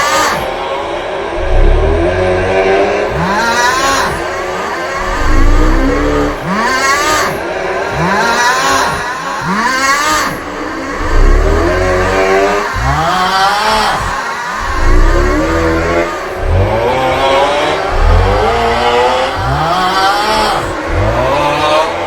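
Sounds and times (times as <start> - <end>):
loud snore groan: 0.0 - 0.6, 1.4 - 22.0
heavy low rumble: 1.2 - 8.1, 10.4 - 21.7.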